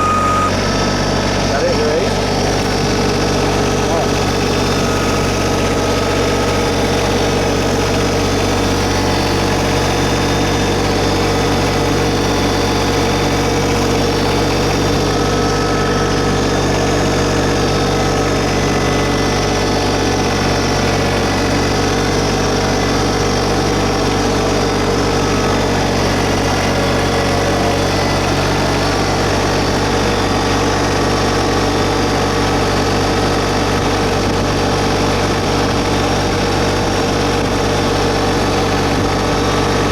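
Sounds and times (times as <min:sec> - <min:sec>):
tractor diesel engine idling: 0:00.0 - 0:39.9.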